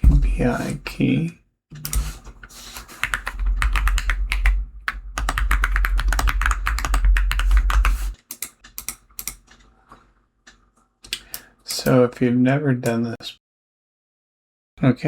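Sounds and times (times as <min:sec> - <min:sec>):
computer keyboard typing: 0:01.8 - 0:09.6.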